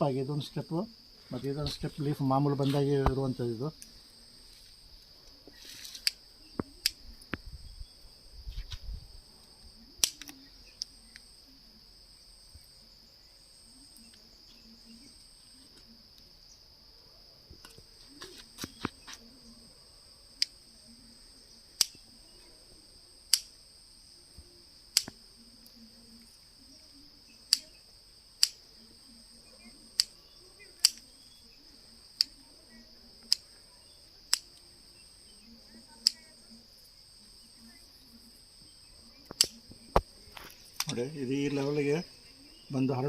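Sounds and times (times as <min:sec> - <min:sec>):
crickets trilling: 0:00.0 - 0:43.0
high insect call pulsing: 0:00.0 - 0:43.0
sharp clicks: 0:05.3 - 0:07.4, 0:10.0 - 0:11.3, 0:21.8 - 0:22.0, 0:23.3 - 0:23.6, 0:24.9 - 0:25.8, 0:27.5 - 0:27.8, 0:28.4 - 0:28.6, 0:30.8 - 0:31.1, 0:34.3 - 0:34.6, 0:39.2 - 0:41.7.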